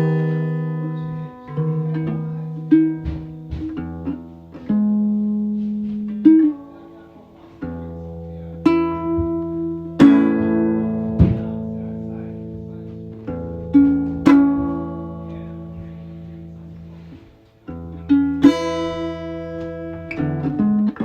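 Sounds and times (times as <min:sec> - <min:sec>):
plucked string instrument: 0:00.0 - 0:21.0.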